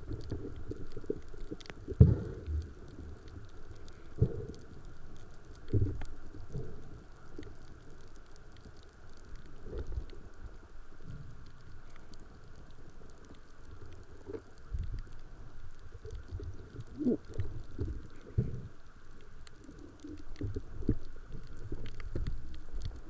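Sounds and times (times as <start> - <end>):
low underwater rumble: 0.0 - 7.9
faint clicks: 0.0 - 23.0.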